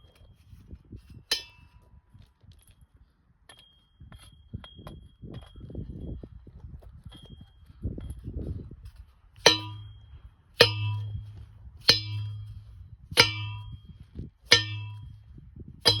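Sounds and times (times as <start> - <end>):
ringing metal clangs: 1.3 - 1.8, 9.4 - 13.9, 14.5 - 16.0.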